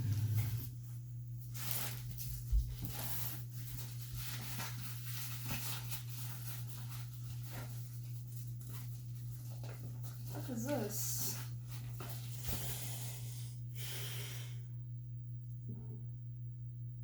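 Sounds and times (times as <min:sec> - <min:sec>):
rustling and handling sounds: 0:00.0 - 0:13.2
low electrical hum: 0:00.0 - 0:17.0.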